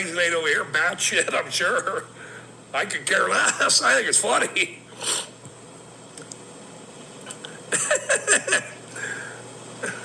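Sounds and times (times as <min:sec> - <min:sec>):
man speaking: 0:00.0 - 0:02.1, 0:02.7 - 0:04.8
low room hum: 0:00.0 - 0:10.0.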